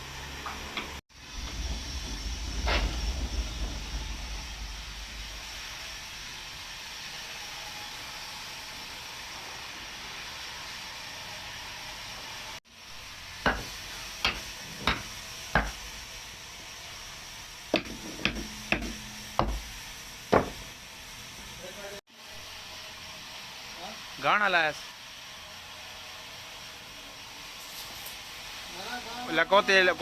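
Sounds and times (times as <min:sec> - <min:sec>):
sawmill hiss: 0:00.0 - 0:30.0
sharp knocks: 0:13.5 - 0:15.8, 0:17.8 - 0:19.7, 0:20.3 - 0:20.6.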